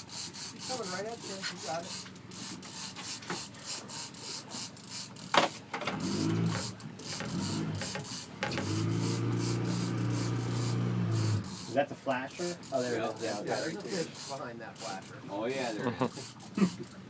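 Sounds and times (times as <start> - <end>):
fishing reel cranking rasp: 0.0 - 5.4, 6.0 - 11.8, 12.4 - 17.0
low motor hum: 5.8 - 11.7.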